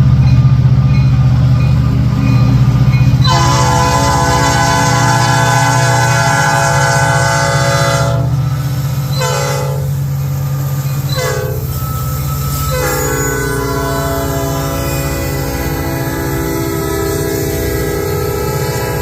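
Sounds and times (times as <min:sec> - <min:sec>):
train engines rumbling: 0:00.0 - 0:19.0
locomotive horn blasts: 0:03.2 - 0:08.4, 0:09.2 - 0:10.0, 0:11.1 - 0:11.8, 0:12.5 - 0:19.0.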